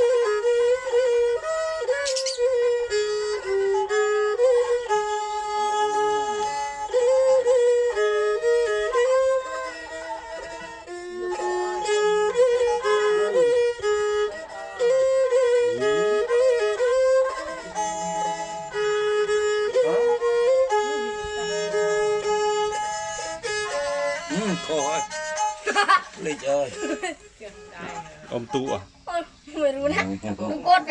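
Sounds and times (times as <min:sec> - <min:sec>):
bowed fiddles playing melody: 0:00.0 - 0:30.9.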